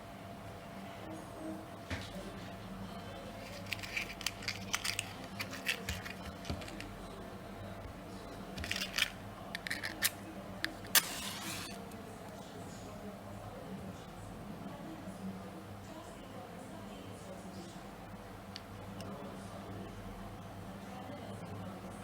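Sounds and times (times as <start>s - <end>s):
low electrical hum: 0.0s - 22.0s
small clicks and rustles: 3.4s - 6.9s.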